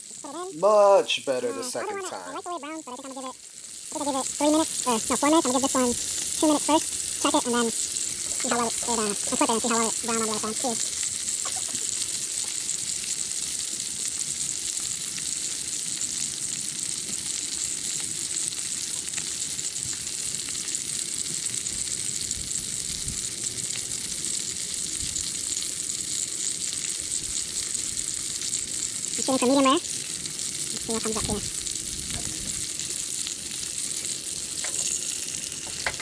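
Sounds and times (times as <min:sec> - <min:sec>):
steak sizzling: 0:00.0 - 0:36.0.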